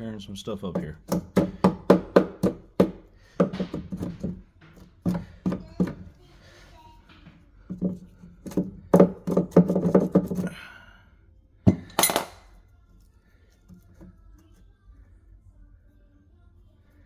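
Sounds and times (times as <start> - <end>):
hand tool knocking on wood: 0.6 - 6.2, 7.1 - 10.6, 11.7 - 12.3.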